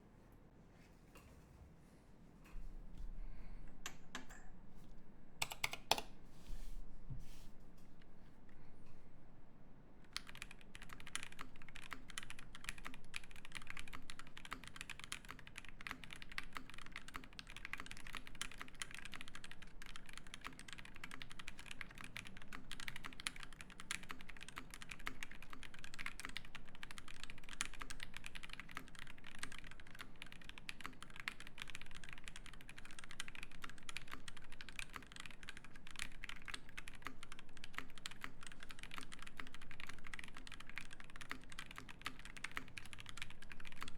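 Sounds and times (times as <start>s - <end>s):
fast mechanical keyboard typing: 5.4s - 6.1s, 10.1s - 43.9s.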